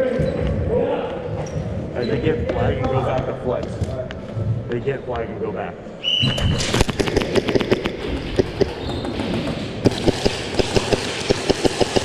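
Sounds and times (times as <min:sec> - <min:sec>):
airsoft gunfire snaps: 0:06.6 - 0:08.5, 0:09.8 - 0:12.0.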